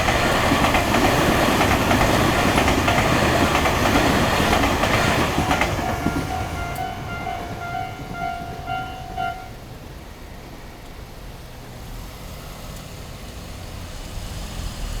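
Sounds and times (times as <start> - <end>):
level crossing warning bell: 4.4 - 9.7.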